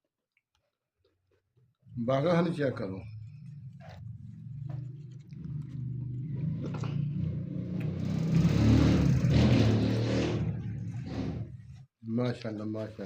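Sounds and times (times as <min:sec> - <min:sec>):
road noise: 0:02.0 - 0:11.8
vehicle engine passing close: 0:02.0 - 0:11.8.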